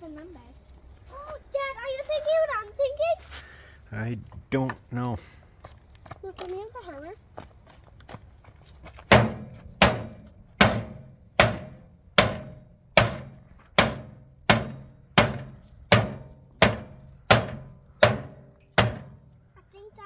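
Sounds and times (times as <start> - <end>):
hammer beating on metal: 9.1 - 19.3.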